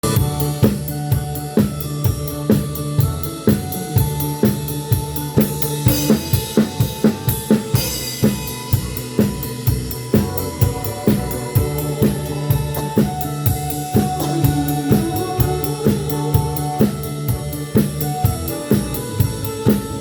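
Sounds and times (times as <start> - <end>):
drum kit steady beat: 0.0 - 20.0
held keyboard or saxophone notes: 10.0 - 20.0.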